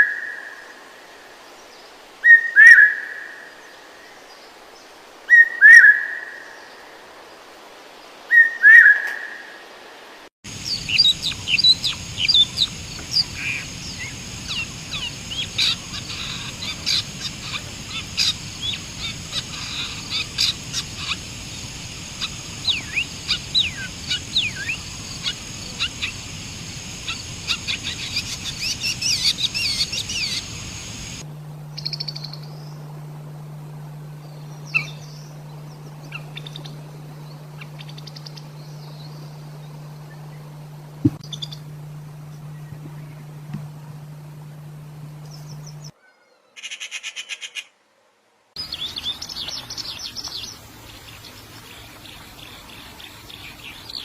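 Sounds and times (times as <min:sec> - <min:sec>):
steady low hum: 0:10.5 - 0:45.9, 0:48.6 - 0:54.0
songbirds chirping and trilling: 0:10.5 - 0:47.7, 0:48.6 - 0:54.0.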